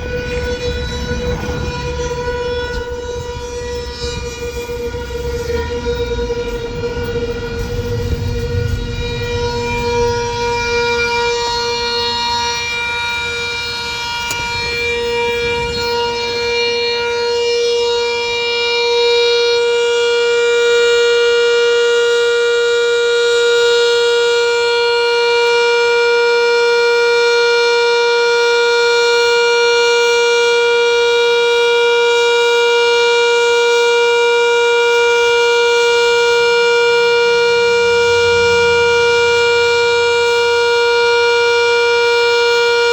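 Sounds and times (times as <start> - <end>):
low vehicle rumble: 0.0 - 16.8, 37.1 - 41.3
warning siren steady tone: 0.0 - 42.9.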